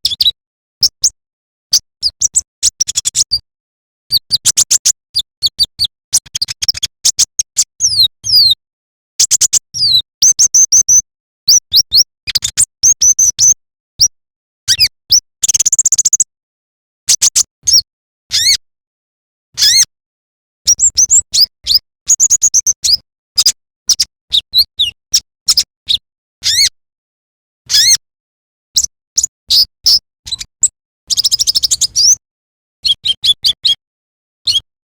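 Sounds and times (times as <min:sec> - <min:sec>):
sunbird chirping and twittering: 0:31.1 - 0:32.2.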